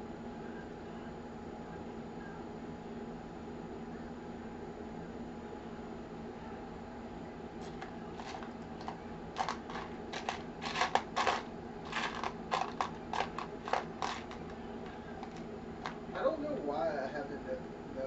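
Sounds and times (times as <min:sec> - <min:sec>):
steady low hum: 0:00.0 - 0:18.0
computer parts clicking and rattling: 0:07.6 - 0:16.2.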